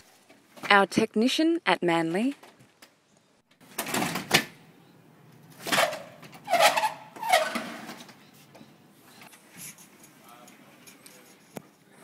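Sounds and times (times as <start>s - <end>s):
sliding door rolling scrapes: 5.6s - 8.1s.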